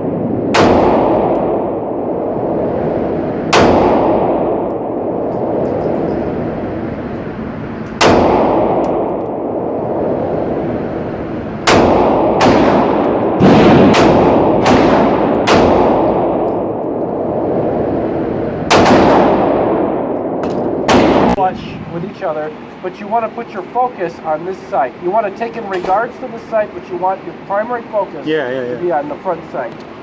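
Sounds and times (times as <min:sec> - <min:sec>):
gunshots with echoing ring: 0:00.0 - 0:02.3, 0:03.5 - 0:06.4, 0:08.0 - 0:10.1, 0:11.6 - 0:17.5, 0:18.5 - 0:21.4.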